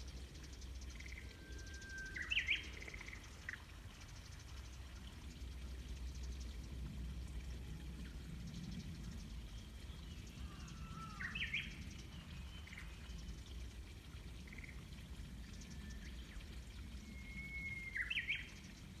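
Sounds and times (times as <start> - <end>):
bird singing whistled song: 1.0 - 3.2, 15.6 - 18.8
steady low rumble: 4.1 - 17.8.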